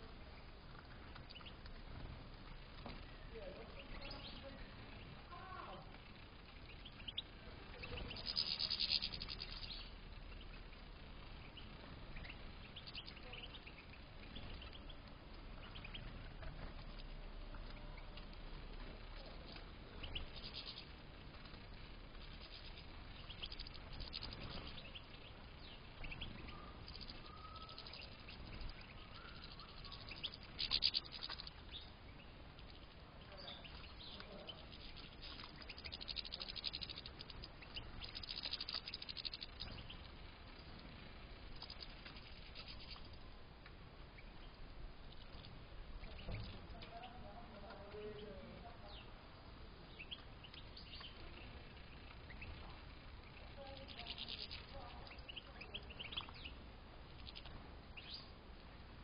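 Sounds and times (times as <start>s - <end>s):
finches twittering and calling: 22.3s - 43.2s, 49.8s - 56.6s.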